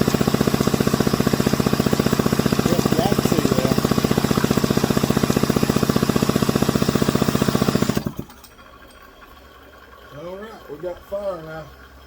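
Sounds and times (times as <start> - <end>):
chainsaw engine turning over: 0.0 - 9.4.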